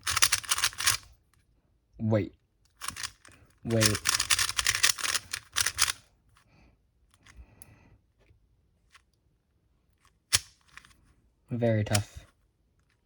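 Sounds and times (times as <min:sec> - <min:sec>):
plastic puzzle cube clicking: 0:00.0 - 0:01.1, 0:02.7 - 0:06.0.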